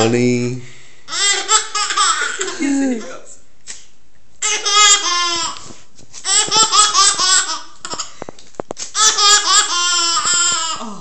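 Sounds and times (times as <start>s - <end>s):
young child giggling: 1.1s - 3.3s, 6.2s - 8.2s.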